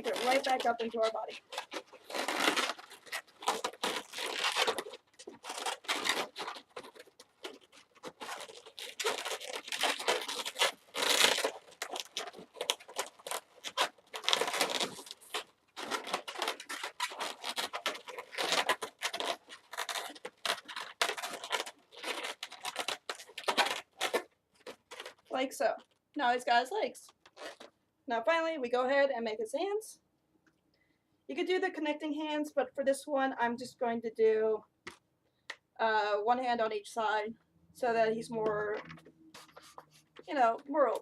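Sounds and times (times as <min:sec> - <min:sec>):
balloons rubbing and squeaking: 0:00.0 - 0:26.0, 0:27.0 - 0:27.7, 0:38.2 - 0:41.0.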